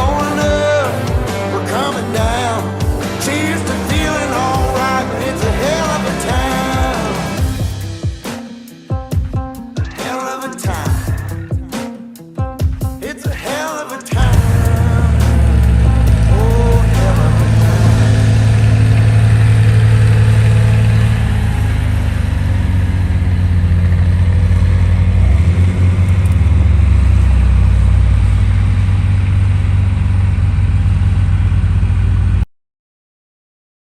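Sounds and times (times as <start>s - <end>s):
combine engine droning: 0.0s - 8.0s, 14.2s - 32.5s.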